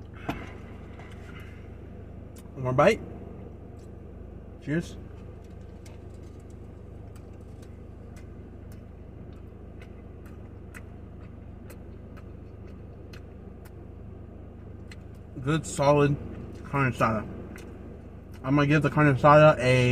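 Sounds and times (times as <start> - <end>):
steady low hum: 0.0 - 19.9
wet chewing clicks: 5.3 - 13.9, 14.5 - 15.4, 17.5 - 18.6.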